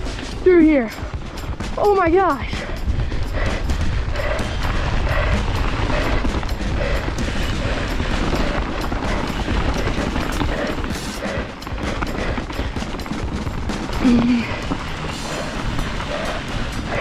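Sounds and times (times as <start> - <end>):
low rumble of riding noise: 2.4 - 17.0
mountain bike rattling over rocks: 3.9 - 17.0.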